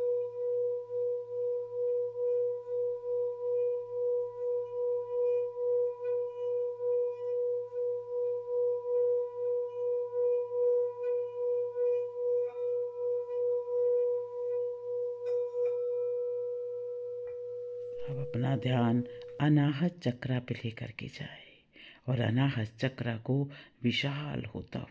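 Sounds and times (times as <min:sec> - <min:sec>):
singing bowl ringing: 0:00.0 - 0:19.9.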